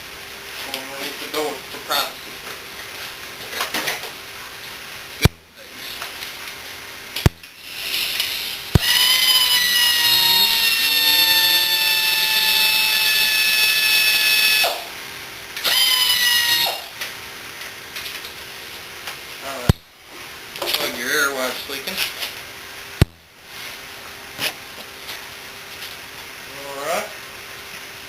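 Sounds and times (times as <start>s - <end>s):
power tool motor running: 7.6s - 14.9s, 15.6s - 17.0s.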